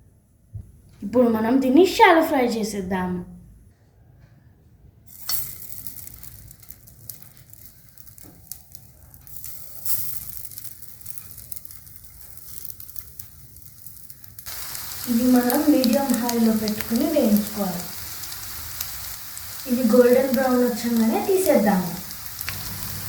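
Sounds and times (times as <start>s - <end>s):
food sizzling in hot oil: 5.2s - 23.0s.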